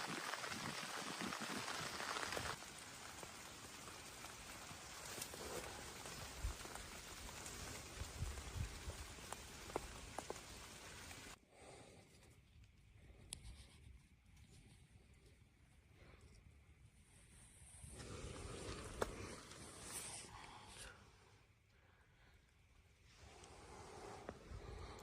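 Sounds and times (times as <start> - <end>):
rain falling: 0.0 - 11.4.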